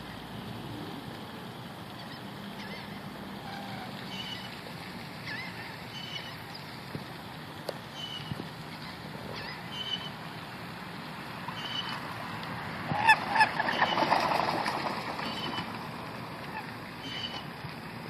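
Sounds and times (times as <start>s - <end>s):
outdoor background noise: 0.0s - 18.0s
bird calls: 1.9s - 4.6s, 5.2s - 6.7s, 7.9s - 10.2s, 11.5s - 12.0s, 13.0s - 14.4s, 15.2s - 15.6s, 16.6s - 17.5s.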